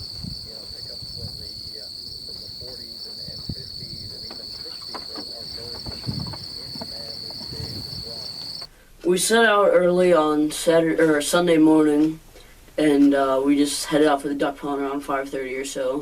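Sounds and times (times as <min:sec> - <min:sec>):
crickets trilling: 0:00.0 - 0:08.7
faint low knocks and rustles: 0:00.0 - 0:08.7.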